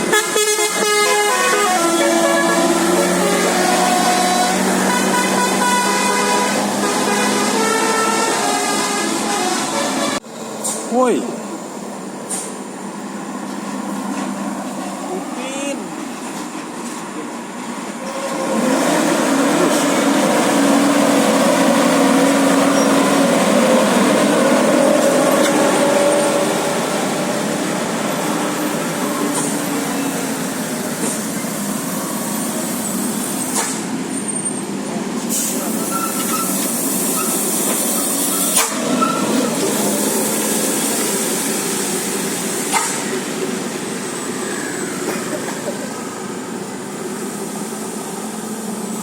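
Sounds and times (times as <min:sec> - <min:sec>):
bus horn playing a tune: 0:00.0 - 0:10.2.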